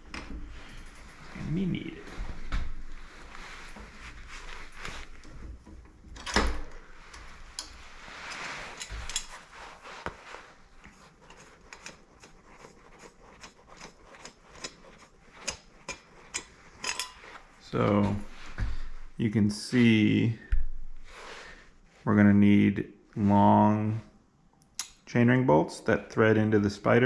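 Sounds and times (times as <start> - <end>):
metal parts clicking and clinking: 8.8 - 9.4, 15.4 - 17.3.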